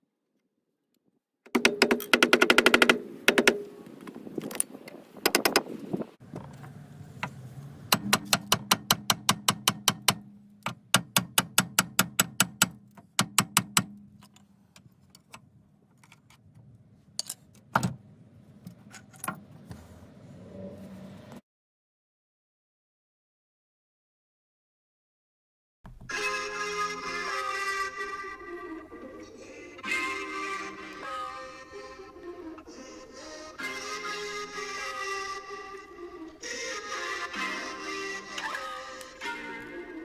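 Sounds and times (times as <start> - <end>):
rapid sharp metallic clicks: 1.5 - 4.0, 5.3 - 5.7.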